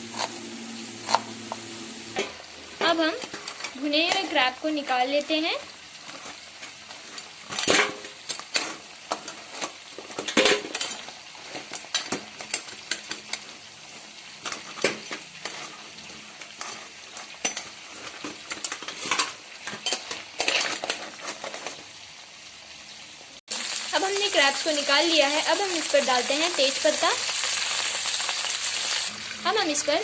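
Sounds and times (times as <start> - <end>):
spoon scraping and clanking on pot: 0.0 - 4.4, 14.4 - 21.8
crabs sizzling in hot oil: 0.0 - 30.0.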